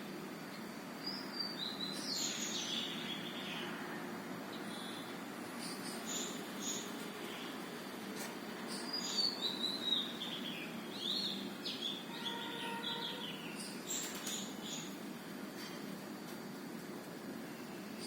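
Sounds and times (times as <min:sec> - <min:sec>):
bird twittering song: 0:01.0 - 0:03.7, 0:04.5 - 0:07.5, 0:08.6 - 0:15.0.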